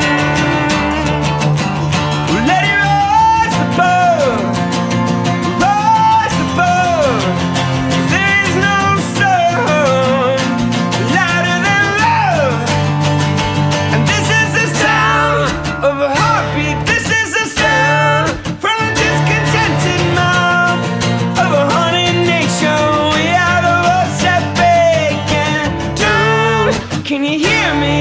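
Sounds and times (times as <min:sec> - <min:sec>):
guitars strumming chords: 0:00.0 - 0:28.0
wordless singing: 0:02.3 - 0:04.6, 0:13.9 - 0:28.0.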